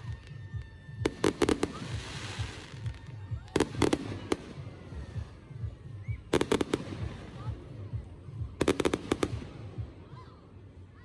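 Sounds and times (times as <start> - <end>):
fireworks cracking: 1.0 - 5.6, 6.3 - 10.1.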